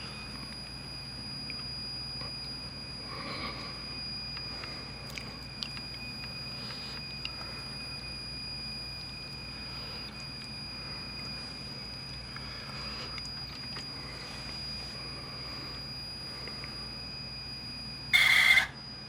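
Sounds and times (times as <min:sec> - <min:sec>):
cassette deck motor hum: 0:00.0 - 0:19.0
high-pitched squeal: 0:18.1 - 0:18.8.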